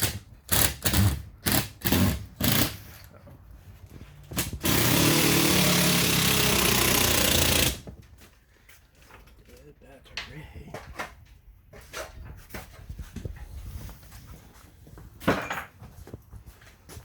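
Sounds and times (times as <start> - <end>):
power tool motor running: 4.5 - 7.9.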